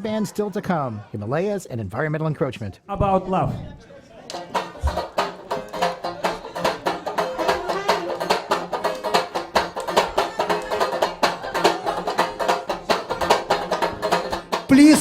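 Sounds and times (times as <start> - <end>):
live band playing fast song: 4.4 - 15.0.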